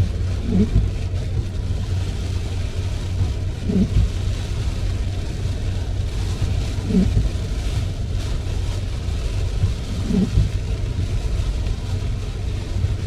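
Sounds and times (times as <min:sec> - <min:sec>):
light rain hiss: 0:00.0 - 0:13.0
road and engine rumble: 0:00.0 - 0:13.0
windshield wiper squeak: 0:00.4 - 0:00.9, 0:03.2 - 0:04.2, 0:06.7 - 0:07.8, 0:09.2 - 0:10.8.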